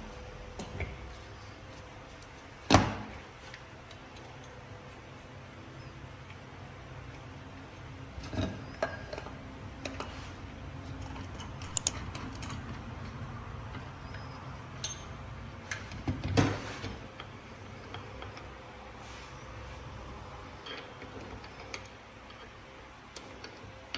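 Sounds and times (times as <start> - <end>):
low steady hum: 0.0 - 23.9.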